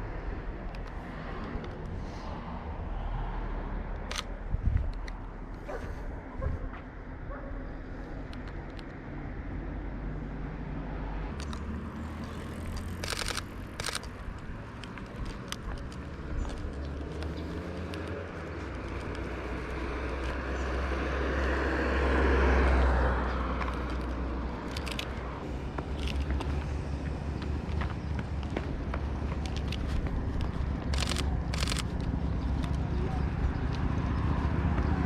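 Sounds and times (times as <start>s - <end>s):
outdoor background noise: 0.0s - 35.0s
vehicle passing: 0.0s - 35.0s
sharp clicks: 0.6s - 2.0s, 3.9s - 5.6s, 8.2s - 9.0s, 11.3s - 20.8s, 23.6s - 33.9s.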